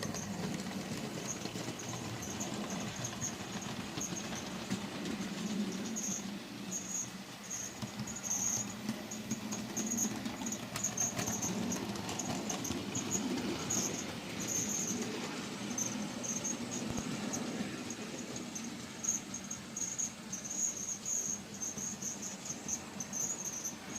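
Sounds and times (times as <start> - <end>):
model train running hum: 0.0 - 23.9
wheel clicks: 7.6 - 17.5.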